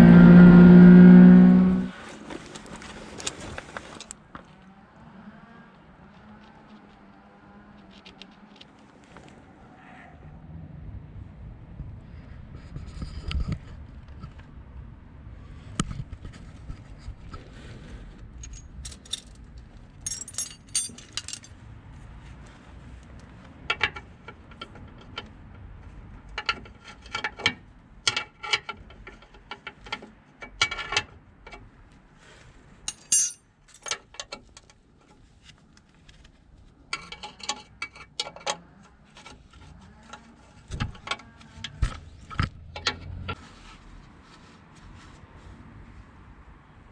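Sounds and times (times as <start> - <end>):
metallic clinks and rattles: 18.4 - 21.6, 32.9 - 34.1.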